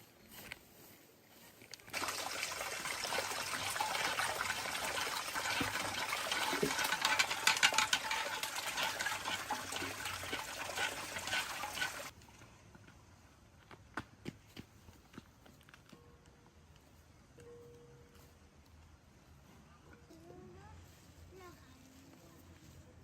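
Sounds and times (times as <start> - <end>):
water running in a splashing stream: 1.9 - 12.2.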